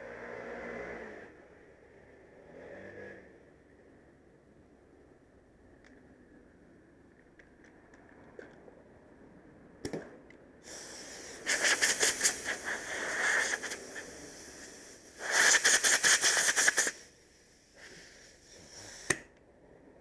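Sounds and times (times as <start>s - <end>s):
pressurized air hissing: 10.6s - 19.2s.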